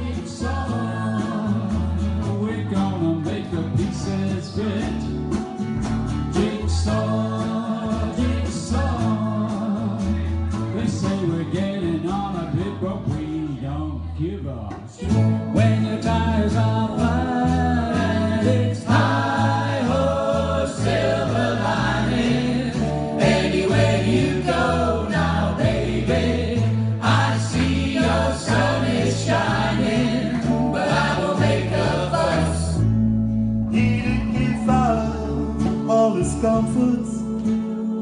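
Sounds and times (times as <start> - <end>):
rock and blues band playing: 0.0 - 13.4, 15.0 - 37.0
steady bass line: 0.0 - 38.0
person singing: 33.7 - 38.0.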